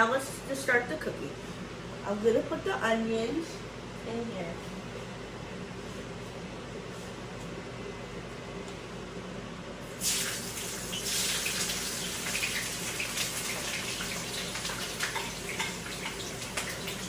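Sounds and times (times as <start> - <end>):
onions sizzling in hot oil: 9.9 - 17.0.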